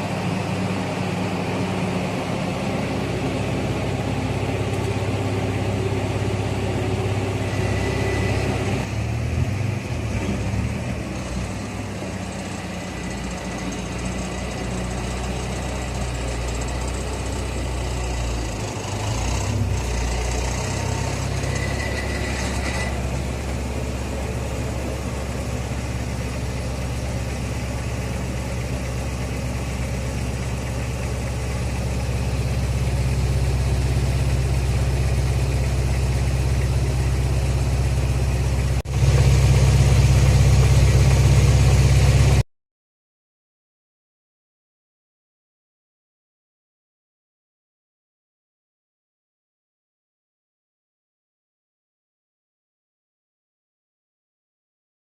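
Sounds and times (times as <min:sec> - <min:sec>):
car engine idling: 0:00.0 - 0:22.2, 0:22.9 - 0:42.4.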